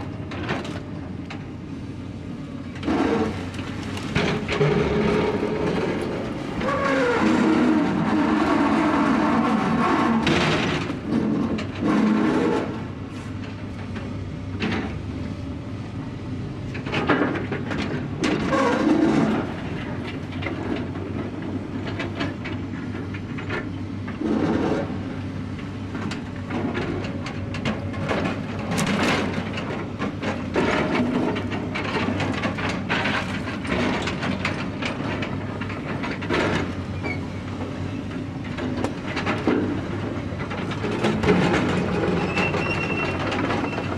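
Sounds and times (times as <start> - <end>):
knocks and clanks: 2.8 - 8.4, 26.0 - 36.8.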